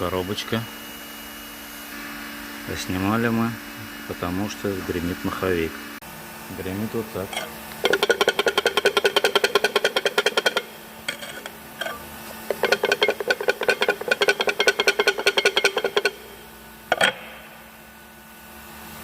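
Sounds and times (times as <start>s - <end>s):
flywheel metallic clatter: 7.3s - 17.1s.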